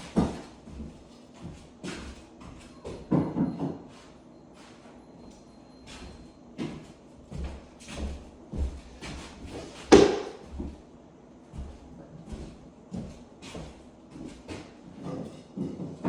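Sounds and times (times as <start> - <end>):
knocks and thuds on wooden floor: 9.8 - 10.8.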